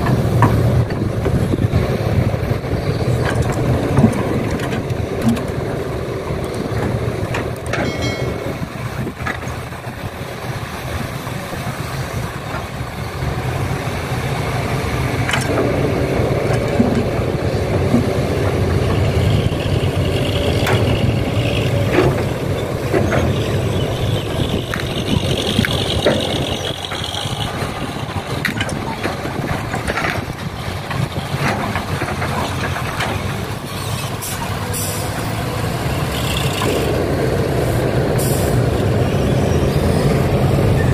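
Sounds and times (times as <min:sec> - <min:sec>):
knocks and clanks: 0:00.0 - 0:01.6, 0:03.2 - 0:10.0, 0:15.2 - 0:34.6
heavy diesel engines running: 0:00.0 - 0:40.9.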